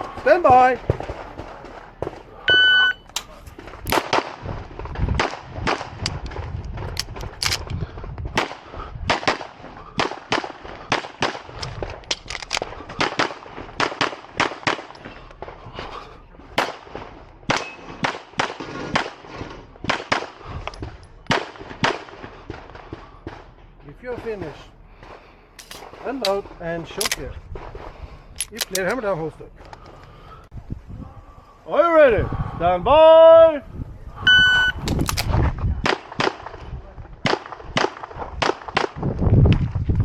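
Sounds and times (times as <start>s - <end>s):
shot timer beep: 2.5s - 3.1s, 34.3s - 34.8s
pistol shots: 12.9s - 14.9s, 16.6s - 19.2s.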